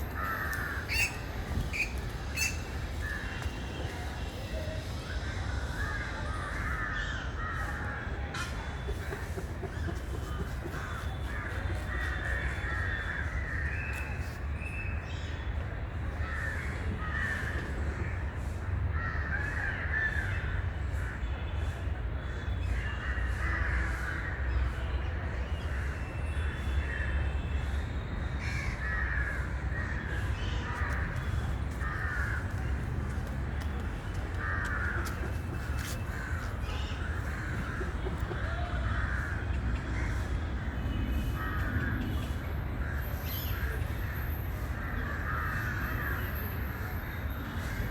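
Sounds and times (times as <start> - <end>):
birds calling: 0.1 - 3.5.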